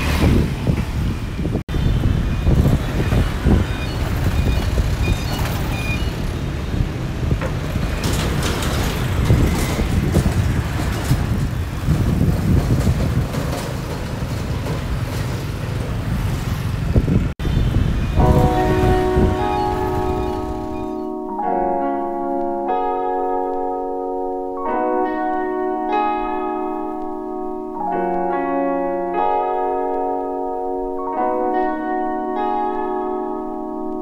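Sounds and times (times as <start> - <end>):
traffic engine rumble: 0.0 - 21.7.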